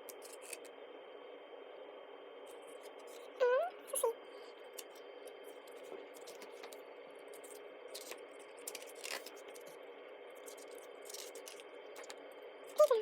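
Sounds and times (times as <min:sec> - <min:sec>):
paper rustling: 0:05.7 - 0:09.8, 0:10.4 - 0:12.1.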